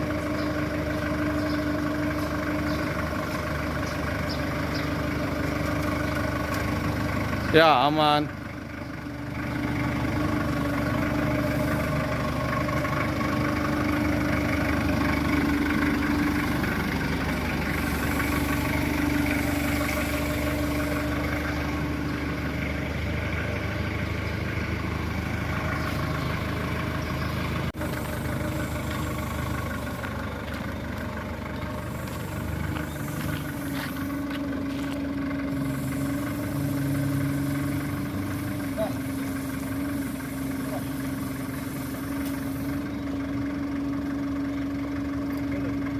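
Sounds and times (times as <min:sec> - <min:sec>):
heavy diesel engine running: 0:00.0 - 0:45.9.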